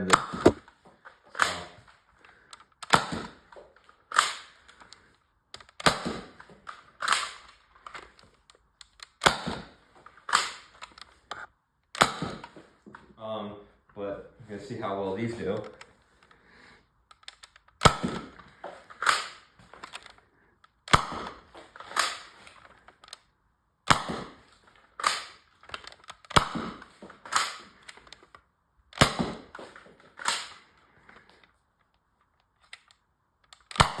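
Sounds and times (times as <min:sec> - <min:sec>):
toy blaster plastic clacks: 0:02.5 - 0:12.6, 0:17.1 - 0:23.3, 0:23.9 - 0:34.0.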